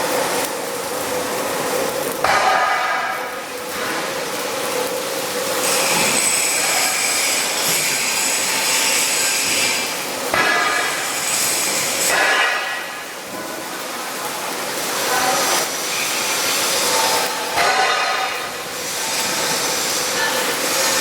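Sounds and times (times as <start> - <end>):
harsh welding hiss: 0.0 - 21.0.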